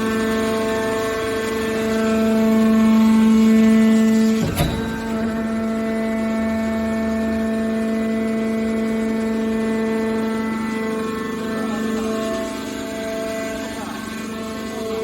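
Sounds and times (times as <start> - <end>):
hydraulic baler humming: 4.0 - 7.0.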